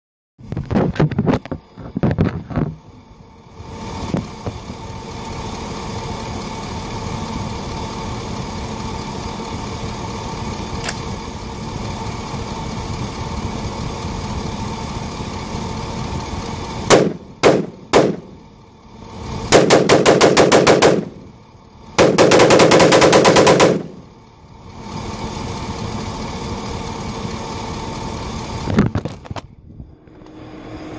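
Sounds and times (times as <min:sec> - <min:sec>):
steady hum: 0:00.4 - 0:30.9
rifle shots: 0:16.9 - 0:18.3, 0:19.5 - 0:21.2, 0:22.0 - 0:24.0.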